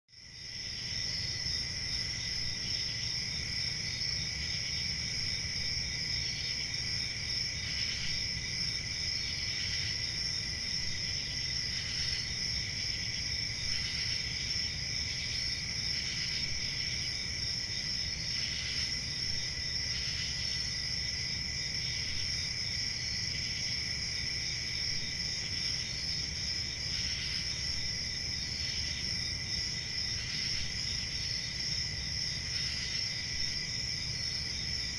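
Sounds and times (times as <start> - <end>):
crickets chirping: 0.2 - 34.9.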